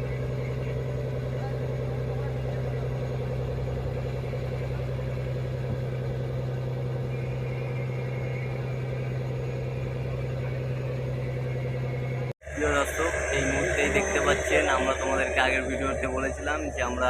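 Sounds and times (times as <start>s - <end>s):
diesel engine drone: 0.0s - 17.0s.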